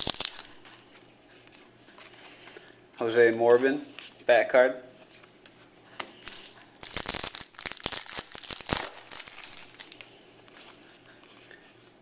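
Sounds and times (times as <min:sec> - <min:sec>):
wrapper crinkling and tearing: 0:00.0 - 0:00.7, 0:06.2 - 0:10.1.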